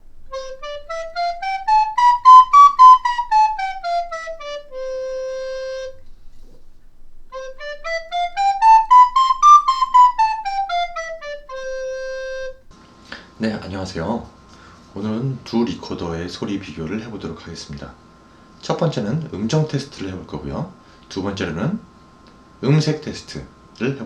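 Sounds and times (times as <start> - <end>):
soprano recorder playing scales: 0.0 - 12.7.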